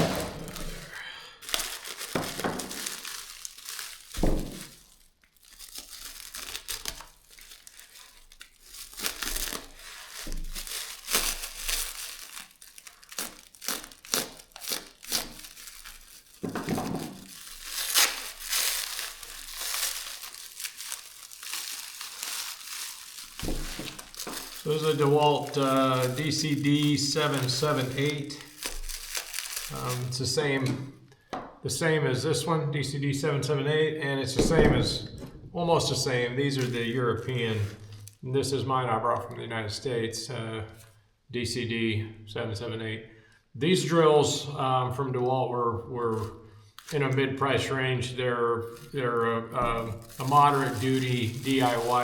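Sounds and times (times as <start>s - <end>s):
packaging crinkling: 0.0s - 31.2s, 36.5s - 38.2s, 46.1s - 47.7s, 48.6s - 49.0s, 49.6s - 52.0s.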